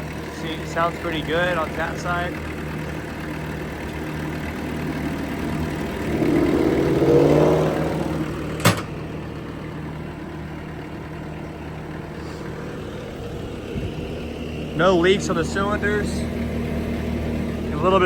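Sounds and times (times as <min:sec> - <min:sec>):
diesel engine idling: 0:00.0 - 0:18.0
rising tone: 0:05.1 - 0:09.0
sharp metallic clank: 0:08.6 - 0:09.0.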